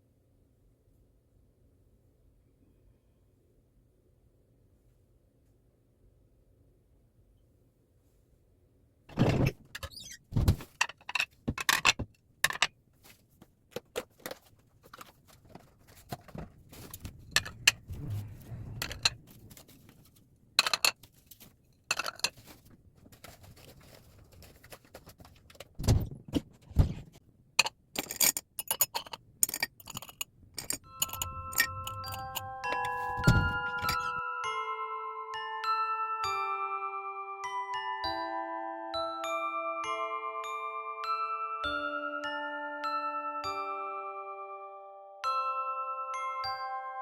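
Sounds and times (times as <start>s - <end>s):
clicks and clinks of objects handled: 10.6s - 17.7s, 20.6s - 25.8s, 27.6s - 34.1s
heavy thumps: 31.0s - 34.1s.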